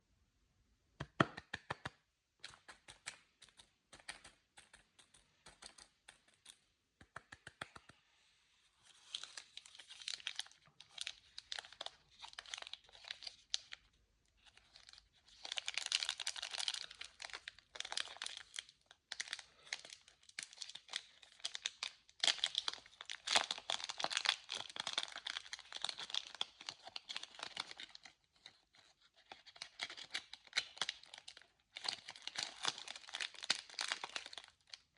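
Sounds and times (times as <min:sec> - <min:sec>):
plastic wrappers crinkling and tearing: 0:08.9 - 0:34.9
sharp clicks of packaging: 0:14.6 - 0:28.5, 0:29.3 - 0:34.9.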